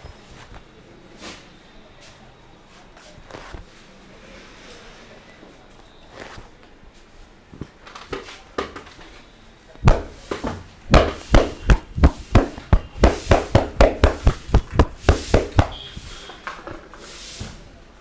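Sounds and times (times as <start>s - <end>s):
hands rubbing skin: 3.2s - 3.7s, 9.9s - 16.2s
hands slapping body: 9.9s - 16.2s.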